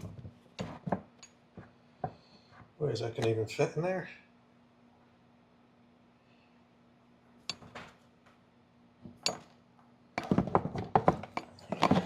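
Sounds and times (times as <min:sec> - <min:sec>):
hard parts knocking and clattering: 0:10.2 - 0:12.0.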